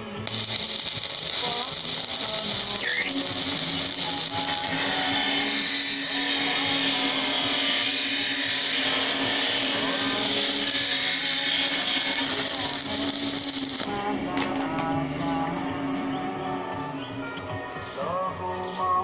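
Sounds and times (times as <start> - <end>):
power tool hissing: 0.1 - 14.0.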